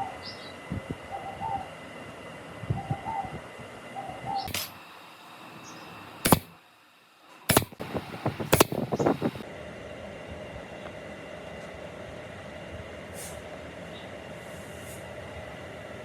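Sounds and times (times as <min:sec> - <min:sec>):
pigeon cooing: 0:01.0 - 0:01.8, 0:02.7 - 0:04.5.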